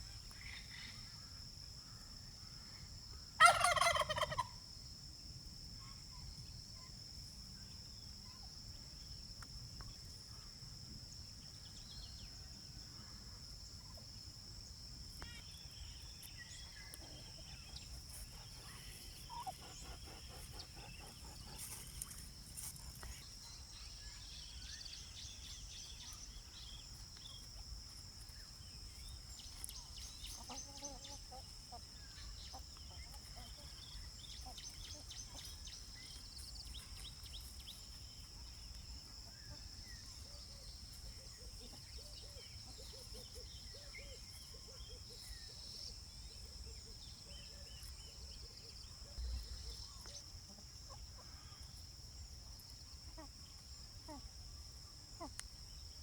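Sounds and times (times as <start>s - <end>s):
faint poultry calls: 3.4s - 4.6s, 16.8s - 22.2s
small birds chirping: 15.1s - 51.8s.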